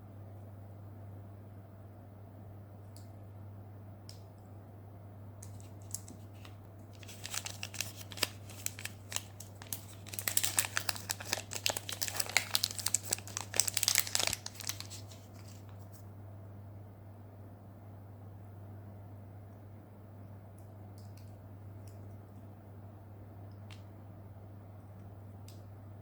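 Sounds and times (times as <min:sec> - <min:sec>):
steady low hum: 0:00.0 - 0:26.0
candy wrapper crinkling: 0:05.4 - 0:16.0.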